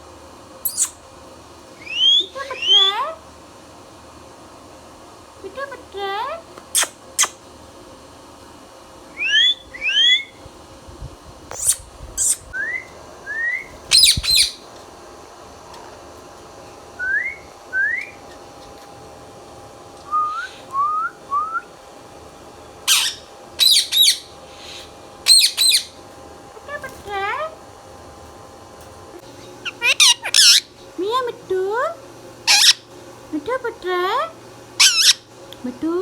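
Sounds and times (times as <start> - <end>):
parrot rising whistles: 1.8 - 2.8, 9.1 - 10.4, 11.5 - 14.6, 17.0 - 18.3, 20.1 - 21.7
parrot screeching: 9.2 - 10.4, 13.9 - 14.6, 22.9 - 26.0, 29.6 - 30.7, 32.5 - 32.8, 34.8 - 35.2.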